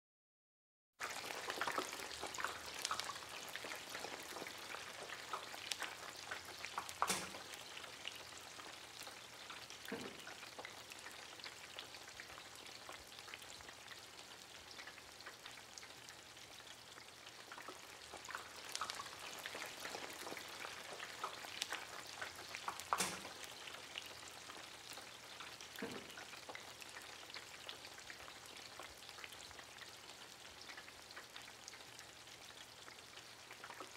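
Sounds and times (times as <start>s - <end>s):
hot oil sizzling and popping: 1.0s - 33.9s.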